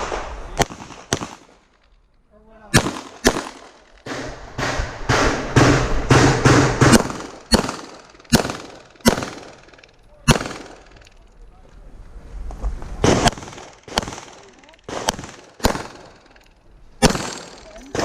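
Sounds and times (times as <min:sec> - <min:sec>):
pistol shots with echo: 0:00.0 - 0:01.6, 0:02.7 - 0:11.0, 0:13.0 - 0:16.4, 0:17.0 - 0:18.0.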